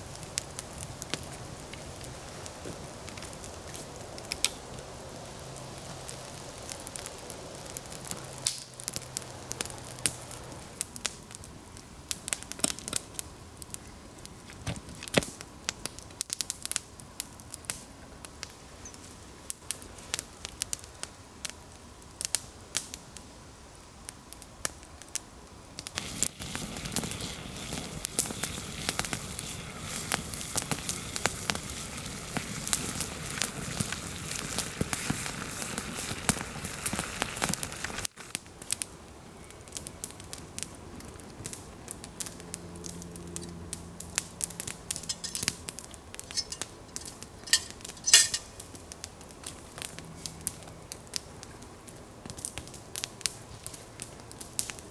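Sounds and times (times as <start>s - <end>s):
hiss of flames: 0.0s - 25.1s, 25.8s - 42.4s
campfire crackling and popping: 0.0s - 54.9s.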